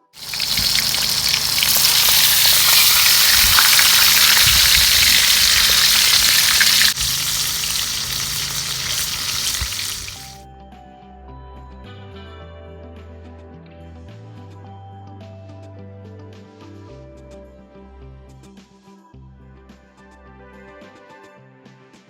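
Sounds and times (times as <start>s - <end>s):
fish sizzling in hot oil: 0.0s - 10.4s.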